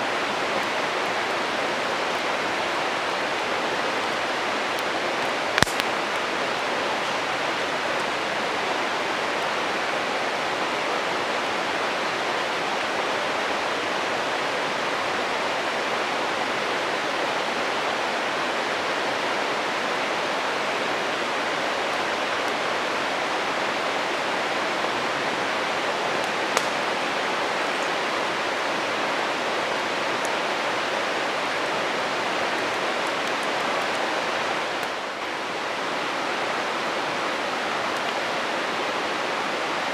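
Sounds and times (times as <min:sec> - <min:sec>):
stream rushing: 0:00.0 - 0:39.9
campfire crackling and popping: 0:01.4 - 0:08.2, 0:24.1 - 0:28.6, 0:31.5 - 0:35.3.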